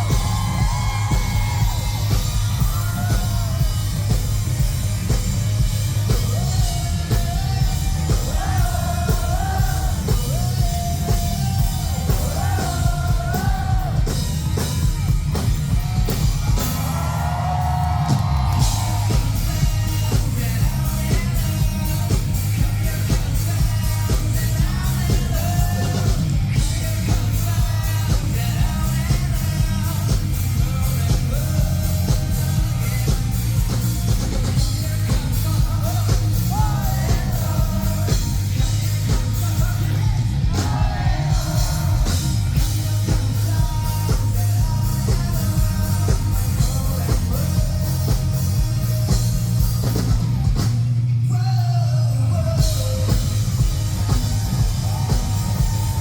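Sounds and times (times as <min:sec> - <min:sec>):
lead vocal singing: 0:00.0 - 0:50.2, 0:51.2 - 0:56.0
live rock band playing: 0:00.0 - 0:56.0.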